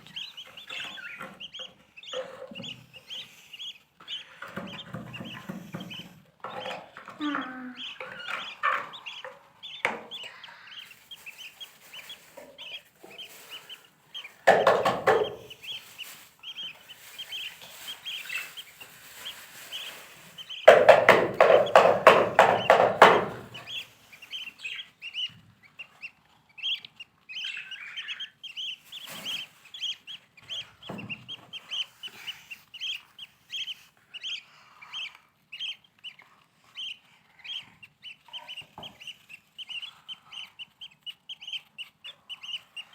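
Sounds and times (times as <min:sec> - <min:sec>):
lovebirds chirping: 0:00.0 - 0:42.9
rapid harsh bird calling: 0:07.2 - 0:25.3.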